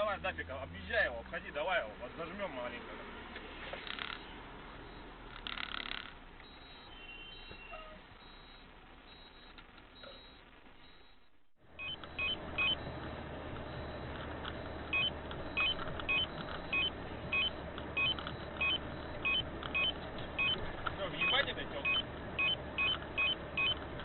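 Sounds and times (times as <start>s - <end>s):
truck engine and road drone: 0.0s - 6.9s, 11.4s - 24.0s
two-pitch electronic beep: 6.5s - 12.9s, 13.6s - 20.6s, 21.2s - 23.8s.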